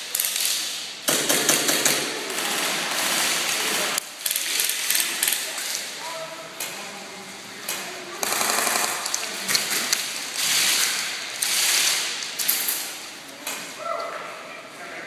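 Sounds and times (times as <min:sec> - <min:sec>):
airsoft guns firing bursts: 0:01.1 - 0:05.4, 0:08.2 - 0:09.2.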